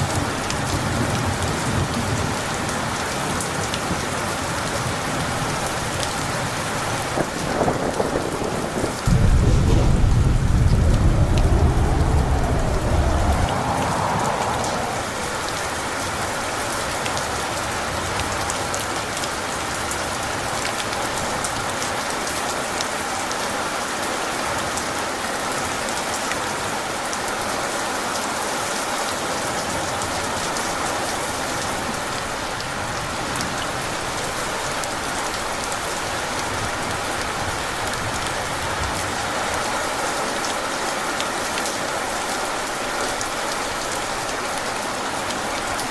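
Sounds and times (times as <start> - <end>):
heavy rainfall: 0.0 - 45.9
deep thunder rumble: 7.2 - 16.3.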